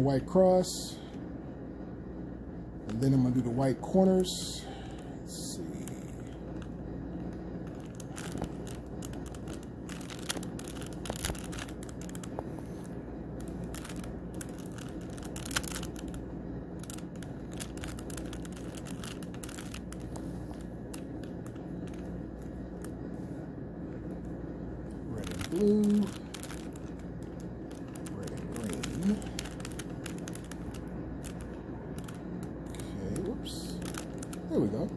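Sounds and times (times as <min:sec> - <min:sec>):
steady low hum: 0:00.0 - 0:34.9
plastic puzzle cube clicking: 0:13.6 - 0:16.2.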